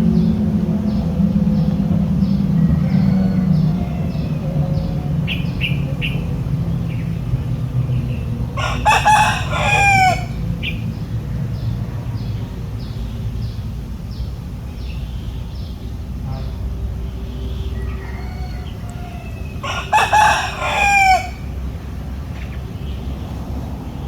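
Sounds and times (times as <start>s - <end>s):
steady low rumble: 0.0s - 14.9s
rooster crowing: 2.3s - 5.1s, 8.6s - 10.4s, 17.6s - 21.7s.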